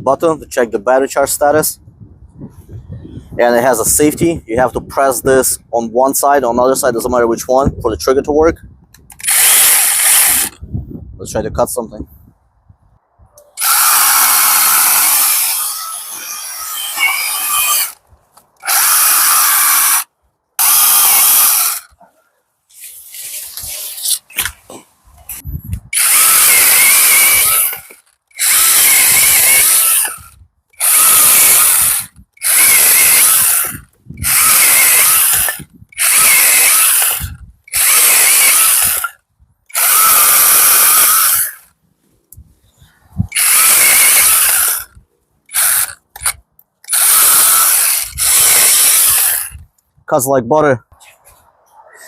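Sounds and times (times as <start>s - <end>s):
chainsaw cutting wood in bursts: 9.2s - 10.6s, 13.6s - 18.0s, 18.6s - 22.0s, 26.0s - 41.8s, 43.3s - 49.6s.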